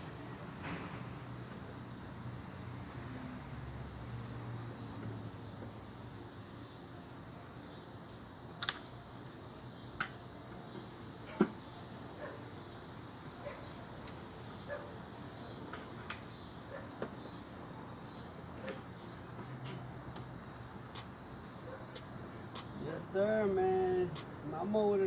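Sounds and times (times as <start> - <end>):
insects chirping: 0.0 - 25.0.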